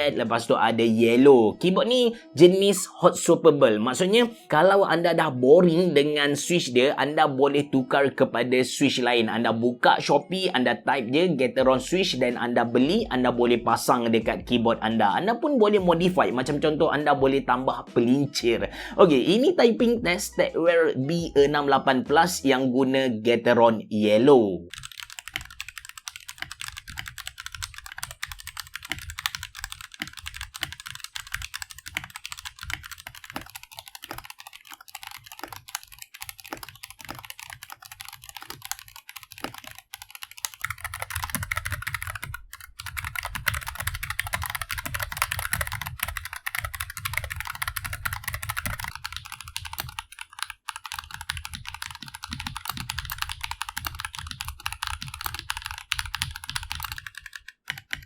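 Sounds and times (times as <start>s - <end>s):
mechanical keyboard key clacks: 24.7s - 58.0s.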